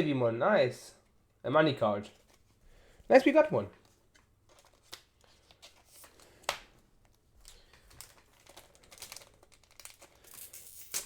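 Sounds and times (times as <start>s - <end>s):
trading cards rustling: 3.2s - 11.0s.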